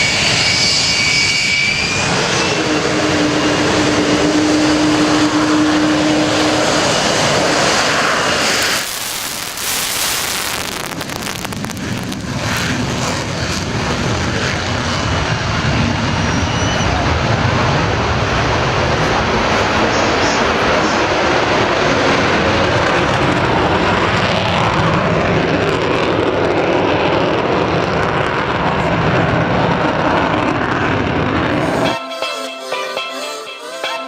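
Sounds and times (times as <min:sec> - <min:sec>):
aircraft engine noise: 0:00.0 - 0:32.2.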